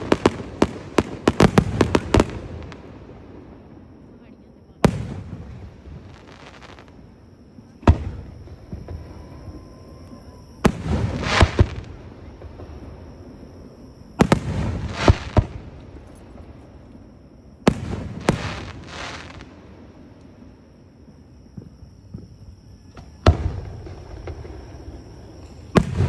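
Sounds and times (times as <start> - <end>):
fireworks crackle: 0.0 - 3.6, 4.9 - 7.0, 7.9 - 12.9, 14.2 - 16.7, 17.7 - 20.6
fireworks bangs: 0.0 - 16.9, 17.6 - 26.0.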